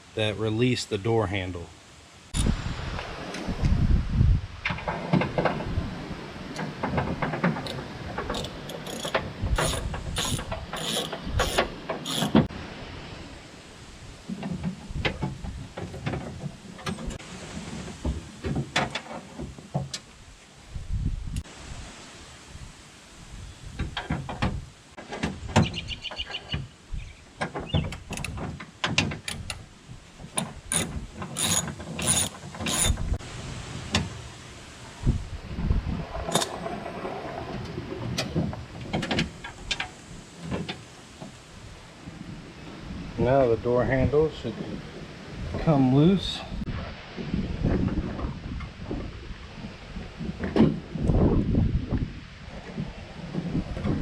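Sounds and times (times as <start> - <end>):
metallic clicks and knocks: 6.6 - 12.5, 27.4 - 29.6, 30.2 - 33.2, 36.2 - 36.8
socket ratchet clicking: 7.7 - 12.4, 30.7 - 33.0.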